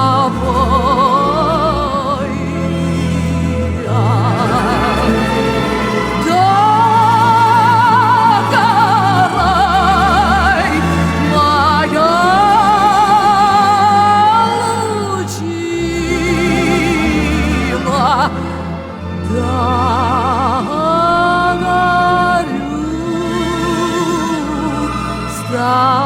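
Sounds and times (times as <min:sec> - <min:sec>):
woman singing with vibrato: 0:00.0 - 0:26.0.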